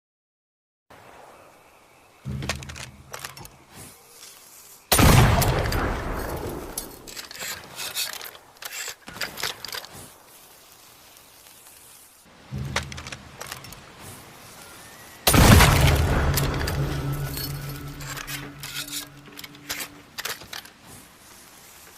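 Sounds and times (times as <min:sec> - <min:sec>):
gunshot ringing out: 0:04.9 - 0:07.1, 0:15.3 - 0:19.3
low rumble: 0:15.3 - 0:19.6.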